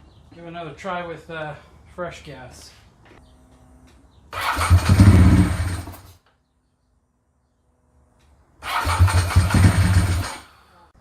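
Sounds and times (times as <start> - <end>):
motorcycle starter cranking: 4.3 - 6.2, 8.6 - 10.5.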